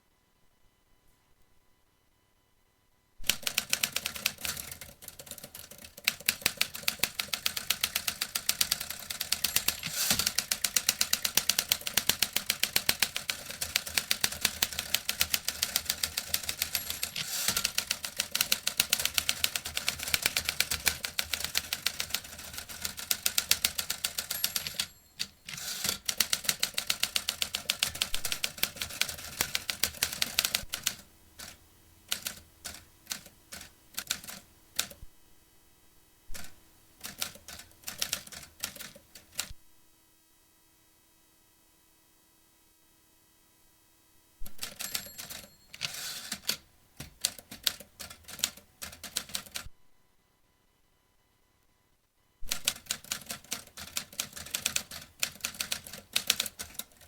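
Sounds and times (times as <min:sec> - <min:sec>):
typewriter key clacks: 0:05.4 - 0:22.2.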